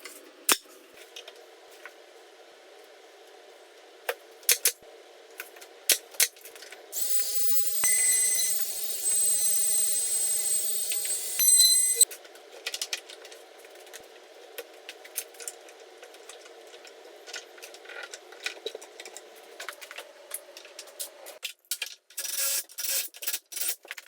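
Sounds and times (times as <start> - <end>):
electric router whining: 7.0 - 12.0.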